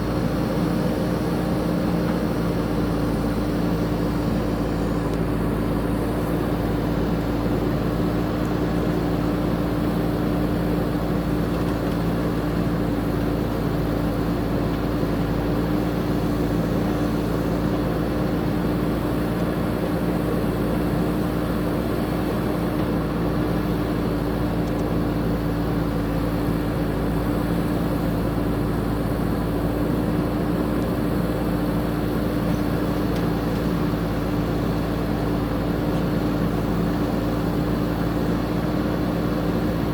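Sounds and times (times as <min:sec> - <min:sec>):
diesel engine running steadily: 0:00.0 - 0:39.9.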